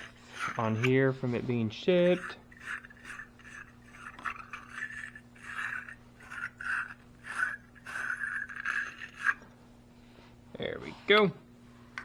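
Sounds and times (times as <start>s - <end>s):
battery terminal scrubbing: 2.0s - 9.4s.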